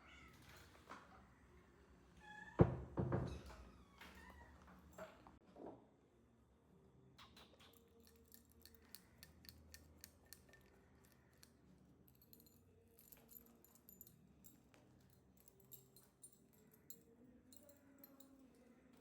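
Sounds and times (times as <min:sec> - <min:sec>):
light clicks and ticks: 0:07.6 - 0:14.1.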